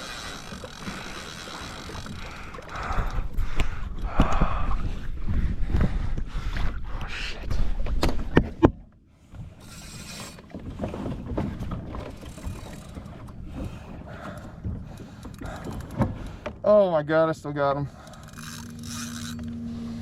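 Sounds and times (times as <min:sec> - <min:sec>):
gear clicks and knocks: 0:00.0 - 0:04.4, 0:10.4 - 0:16.6.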